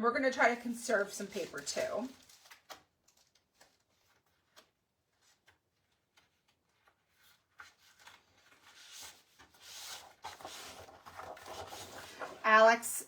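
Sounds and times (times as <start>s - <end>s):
paper sliding across tabletop: 8.6s - 12.6s.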